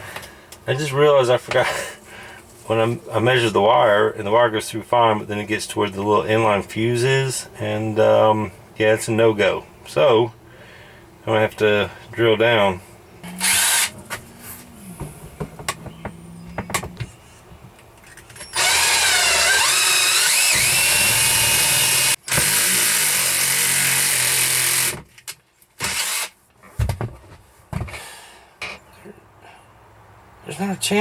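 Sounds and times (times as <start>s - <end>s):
cordless drill boring: 13.3s - 14.0s, 18.4s - 25.0s, 25.8s - 26.3s.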